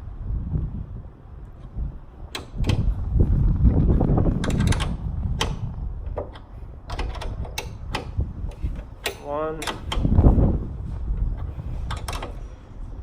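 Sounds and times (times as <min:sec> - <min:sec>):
low handling rumble: 0:00.0 - 0:13.0
metal tool clicks and clanks: 0:04.4 - 0:10.1, 0:11.9 - 0:12.4.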